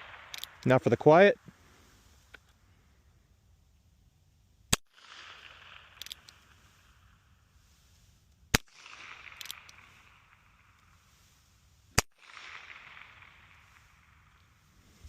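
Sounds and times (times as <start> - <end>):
rifle shots cracking: 4.7 - 7.2, 8.5 - 11.0, 12.0 - 14.7.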